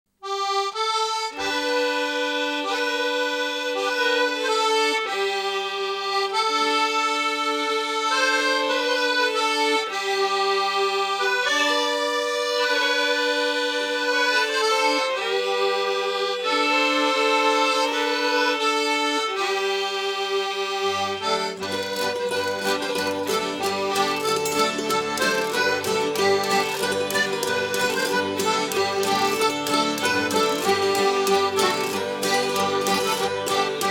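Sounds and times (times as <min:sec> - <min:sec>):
accordion folk dance tune: 0:00.2 - 0:33.9
band bass line and rhythm: 0:21.7 - 0:33.9.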